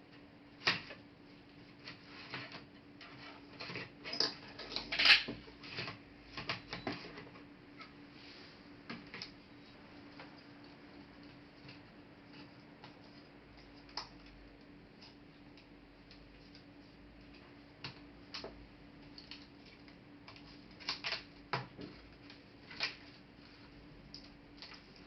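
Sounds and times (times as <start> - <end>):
faint steady hum: 0.0 - 25.0.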